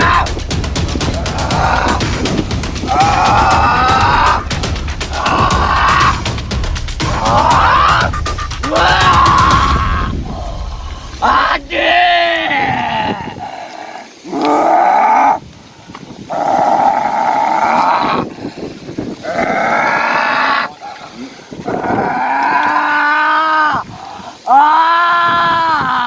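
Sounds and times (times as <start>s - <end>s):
person groaning cries: 2.9s - 4.5s, 5.1s - 6.3s, 7.0s - 8.1s, 8.7s - 10.6s.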